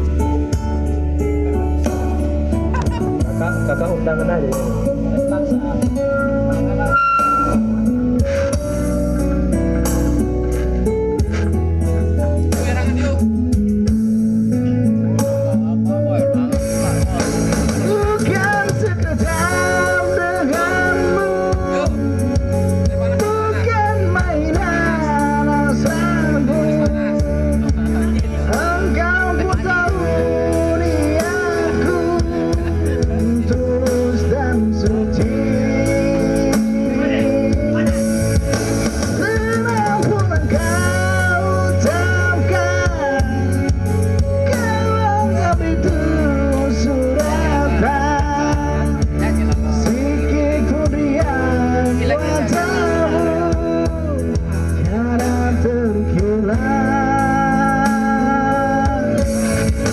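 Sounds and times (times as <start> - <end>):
band with guitar: 0.0 - 59.9
person singing: 14.9 - 59.9.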